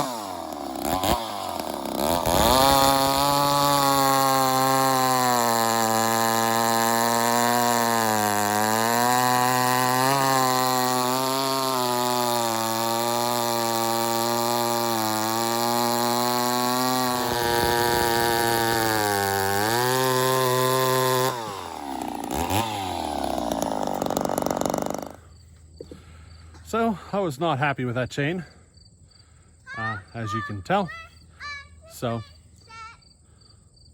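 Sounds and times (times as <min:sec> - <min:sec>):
chainsaw cutting wood: 0:00.0 - 0:26.2.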